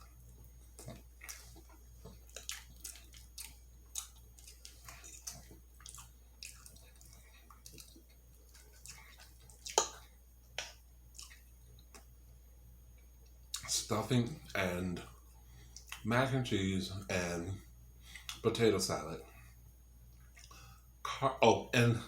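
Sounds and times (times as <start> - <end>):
wet mouth smacks chewing: 0.6 - 12.1, 15.7 - 16.0, 20.1 - 20.7.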